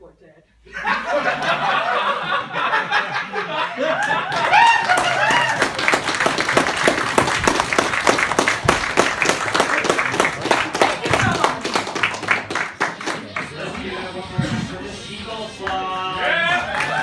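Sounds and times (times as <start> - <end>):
audience laughing: 0.7 - 7.1
audience applause: 3.8 - 13.8, 16.3 - 17.0.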